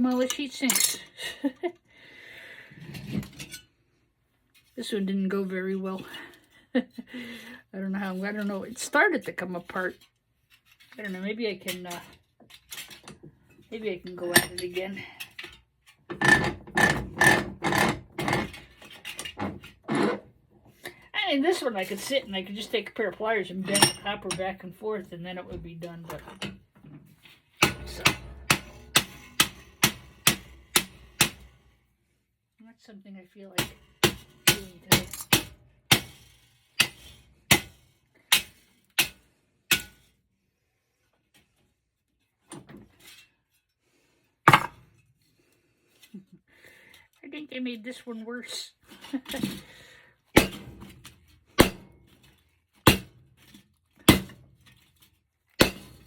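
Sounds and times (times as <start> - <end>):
hammer striking metal: 27.6 - 31.5.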